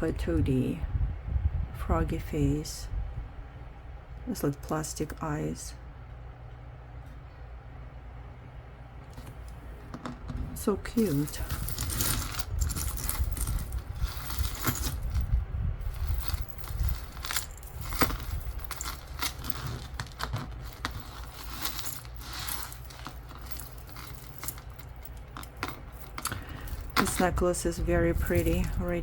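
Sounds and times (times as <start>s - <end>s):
jewelry clinking and rattling: 9.9s - 29.0s.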